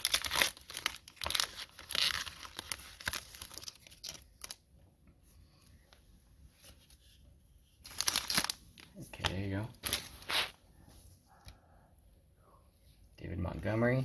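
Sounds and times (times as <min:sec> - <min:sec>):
foil wrapper tearing and crinkling: 0:00.0 - 0:04.6, 0:07.9 - 0:08.6.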